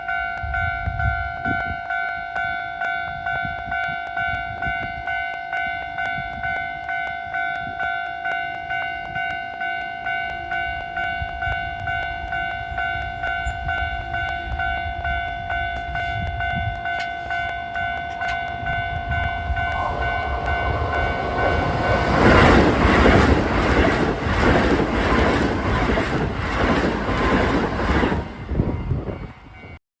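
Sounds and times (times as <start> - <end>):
crossing warning bell: 0.0 - 29.8
electric train passing: 3.1 - 29.8
wheels clacking over rail joints: 15.5 - 28.7.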